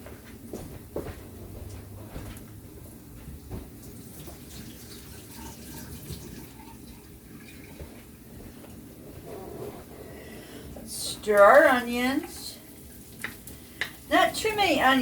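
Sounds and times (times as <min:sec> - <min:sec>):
tap water splashing into sink: 0:03.9 - 0:06.8.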